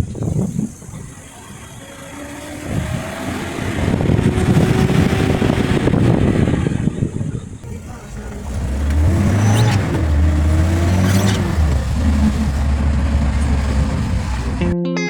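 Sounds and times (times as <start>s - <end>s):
road noise: 0.0s - 14.8s
car engine accelerating: 0.2s - 14.8s.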